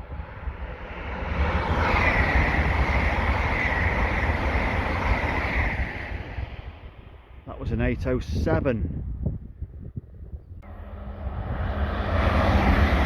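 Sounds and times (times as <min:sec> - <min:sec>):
electric train passing at speed: 0:00.0 - 0:07.7, 0:10.6 - 0:13.0
high-pitched whine: 0:10.6 - 0:13.0.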